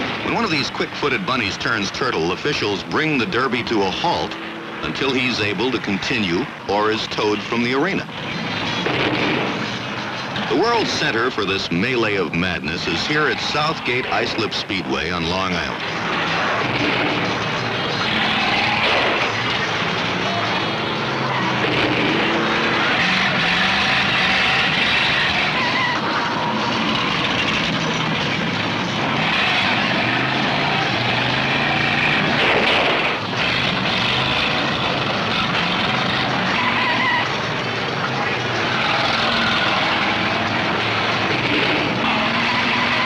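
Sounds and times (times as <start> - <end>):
car engines roaring and revving: 0.0 - 43.0.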